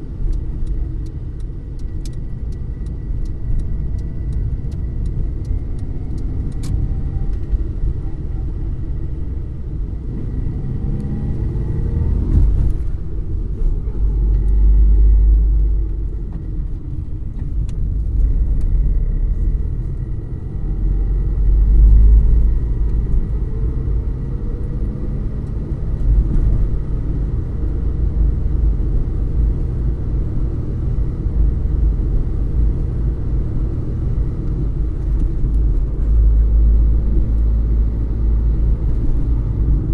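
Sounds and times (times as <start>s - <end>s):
car engine rumbling: 0.0s - 39.9s.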